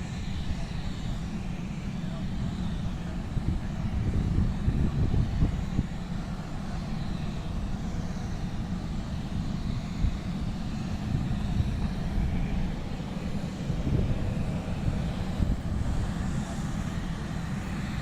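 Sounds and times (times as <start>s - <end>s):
distant aircraft engine: 0.0s - 18.0s.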